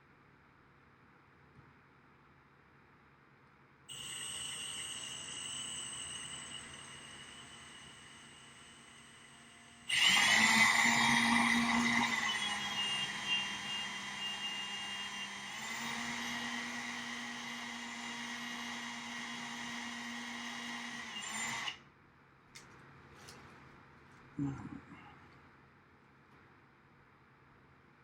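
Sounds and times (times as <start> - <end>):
power drill into wood: 3.9 - 21.8.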